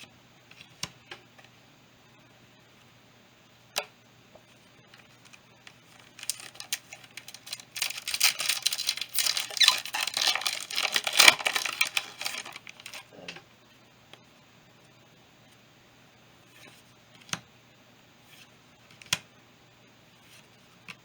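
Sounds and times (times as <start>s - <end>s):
foil wrapper crinkling: 5.9s - 13.1s.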